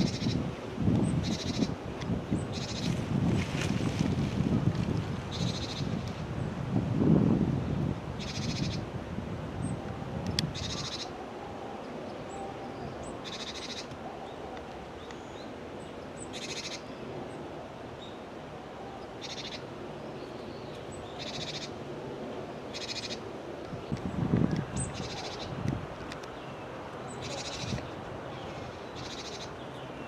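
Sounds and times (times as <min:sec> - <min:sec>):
songbird trilling: 0:00.0 - 0:00.4, 0:01.0 - 0:01.8, 0:02.4 - 0:03.0, 0:05.3 - 0:06.0, 0:08.2 - 0:08.8, 0:10.5 - 0:11.2, 0:12.2 - 0:14.4, 0:16.2 - 0:17.0, 0:19.2 - 0:19.7, 0:20.6 - 0:21.8, 0:22.7 - 0:23.2, 0:24.5 - 0:25.6, 0:26.4 - 0:29.9
outdoor background noise: 0:00.0 - 0:30.0.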